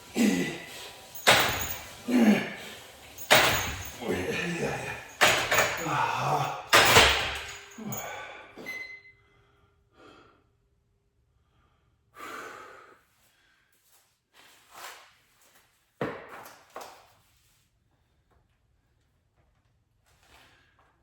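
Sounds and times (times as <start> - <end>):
man exhaling forcefully: 0.1 - 2.9, 7.8 - 8.6, 12.2 - 13.0.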